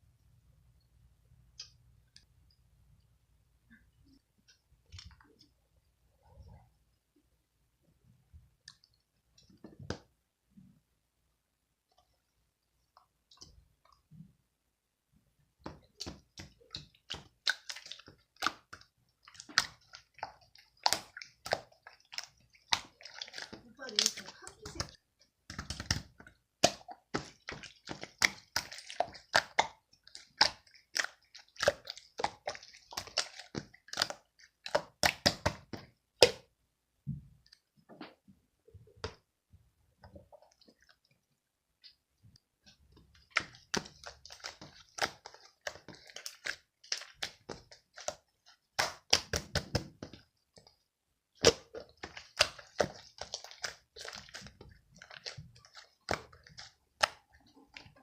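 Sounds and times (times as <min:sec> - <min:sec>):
slime squeezed crackling and popping: 0:51.4 - 0:58.0.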